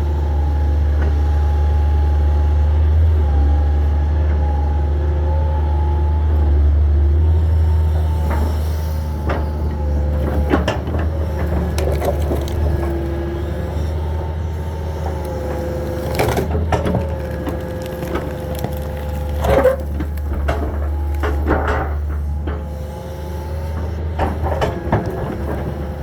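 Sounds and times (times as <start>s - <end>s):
excavator diesel engine running: 0.0s - 26.0s
wood cracking and splintering: 10.1s - 14.0s, 15.0s - 22.4s.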